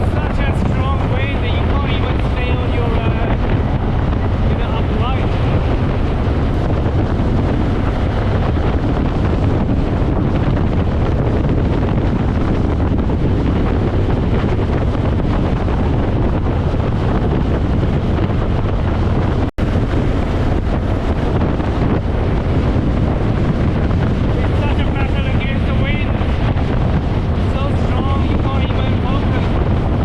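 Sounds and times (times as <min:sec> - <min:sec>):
wind blasting over microphone: 0:00.0 - 0:30.0.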